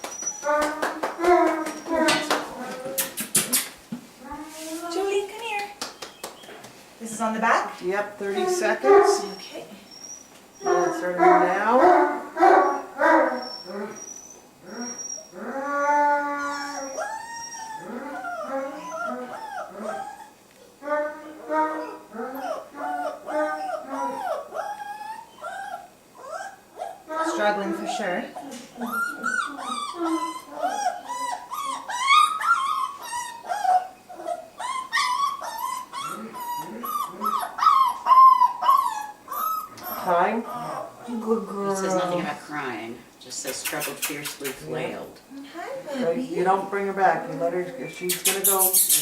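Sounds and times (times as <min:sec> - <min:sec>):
puppy howling whines: 0:00.0 - 0:03.0, 0:08.4 - 0:41.0.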